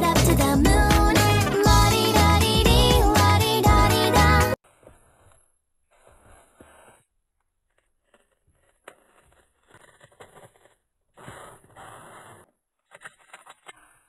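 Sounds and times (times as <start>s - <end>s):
paper rustling and scraping: 4.6s - 13.9s.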